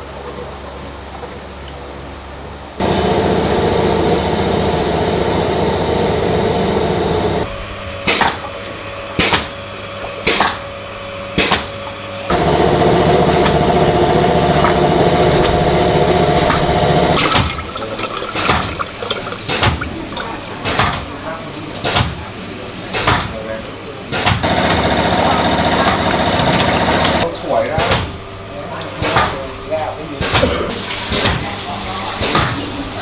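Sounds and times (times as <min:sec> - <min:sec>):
factory machine humming: 0:02.5 - 0:27.4.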